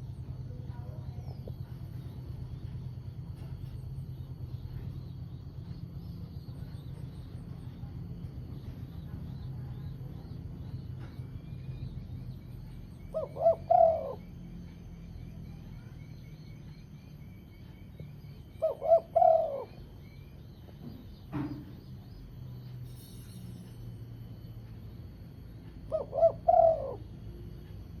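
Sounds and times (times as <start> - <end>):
small birds chirping: 0.0 - 28.0
dove cooing: 13.0 - 14.7, 18.4 - 20.0, 25.8 - 28.0.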